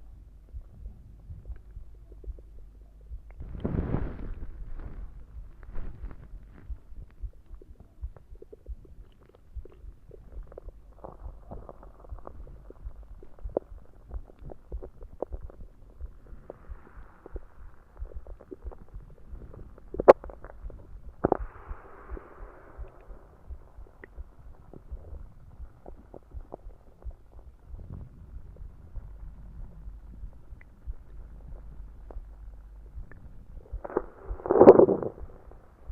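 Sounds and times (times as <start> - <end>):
stomach growling and gurgling: 0.0 - 35.9
loud sharp stomach pop: 33.1 - 35.5.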